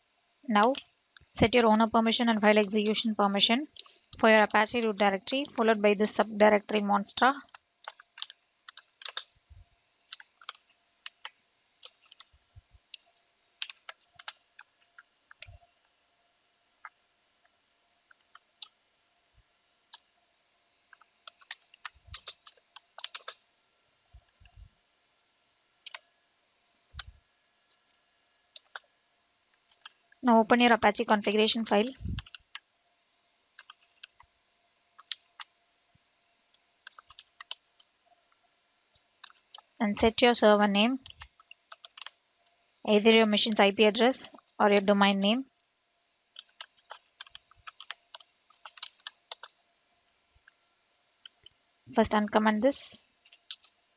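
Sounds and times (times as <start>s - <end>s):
keyboard keys clicking: 7.5s - 9.3s, 10.1s - 12.3s, 13.6s - 15.6s, 20.9s - 23.4s, 25.8s - 26.0s, 32.2s - 32.6s, 33.6s - 34.2s, 36.8s - 37.9s, 41.0s - 42.2s, 46.4s - 49.6s
keyboard keystroke clicks: 7.5s - 9.3s, 20.9s - 23.4s, 46.4s - 49.5s.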